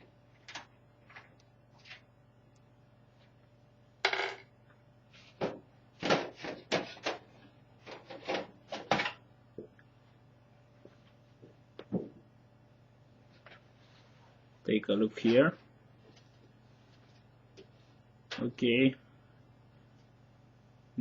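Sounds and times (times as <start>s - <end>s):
computer case panel knocks and clatters: 5.4s - 7.2s.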